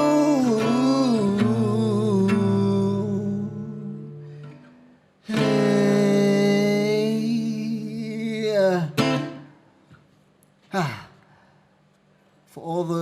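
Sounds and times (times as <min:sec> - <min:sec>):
acoustic guitar chords: 0:00.0 - 0:09.8.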